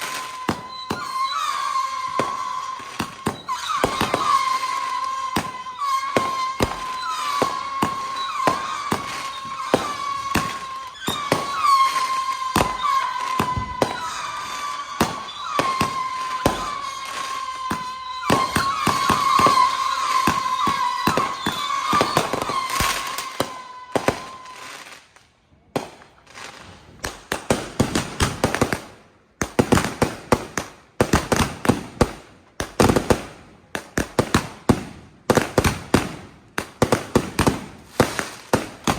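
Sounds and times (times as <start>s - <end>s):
high firework whistle: 0.0s - 27.2s, 36.8s - 38.9s
firework crackles: 0.0s - 38.9s
fireworks popping and cracking: 0.0s - 38.9s.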